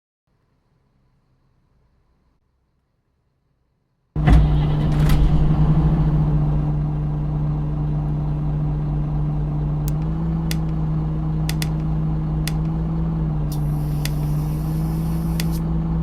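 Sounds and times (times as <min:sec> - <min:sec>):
bus engine humming: 0:04.2 - 0:16.0
sharp clicks: 0:09.8 - 0:12.9, 0:13.5 - 0:15.7.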